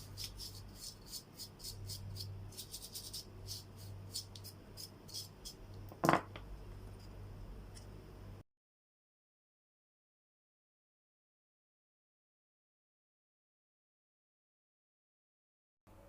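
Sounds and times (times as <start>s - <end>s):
scratchy scrubbing strokes: 0.0s - 5.6s.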